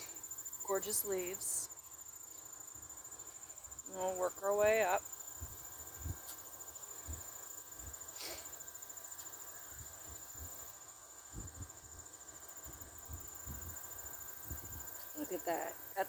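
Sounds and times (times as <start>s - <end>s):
crickets chirping: 0.0s - 16.0s
wind on microphone: 5.4s - 6.3s, 11.3s - 12.0s, 12.6s - 15.6s.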